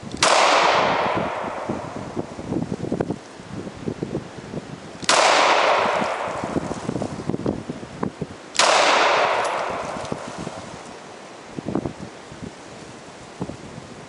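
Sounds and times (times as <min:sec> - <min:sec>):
pistol shots with echo: 0:00.2 - 0:02.2, 0:05.0 - 0:06.6, 0:08.6 - 0:10.3.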